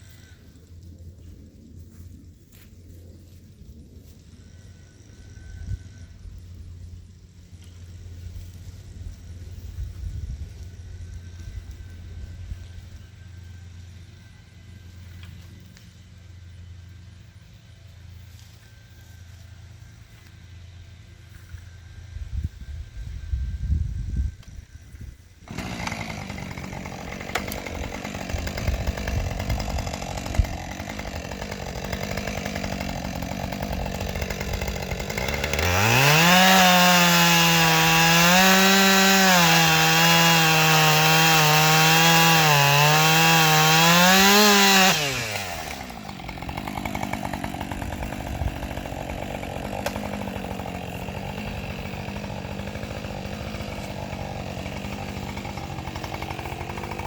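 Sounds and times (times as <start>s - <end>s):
chainsaw idling and revving: 10.6s - 22.2s, 24.7s - 57.0s.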